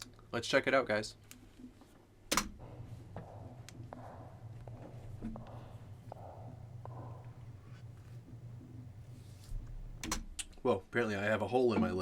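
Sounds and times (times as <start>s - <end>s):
low hum: 2.5s - 10.2s.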